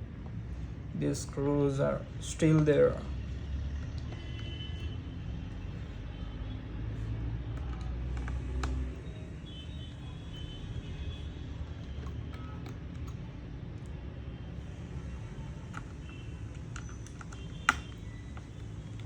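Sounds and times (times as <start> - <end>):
screwdriver clicking on plastic case: 15.6 - 19.0.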